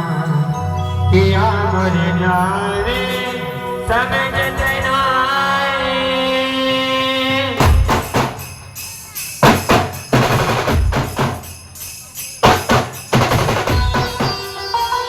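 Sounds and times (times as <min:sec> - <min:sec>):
snare and bass drum strikes: 0:07.6 - 0:08.5, 0:09.4 - 0:11.5, 0:12.4 - 0:14.5.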